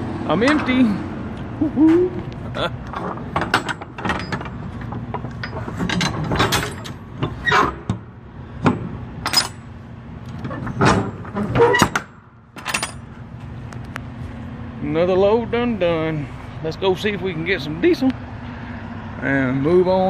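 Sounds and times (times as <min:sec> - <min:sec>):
metallic clanks and knocks: 0:02.8 - 0:09.7, 0:10.3 - 0:13.1.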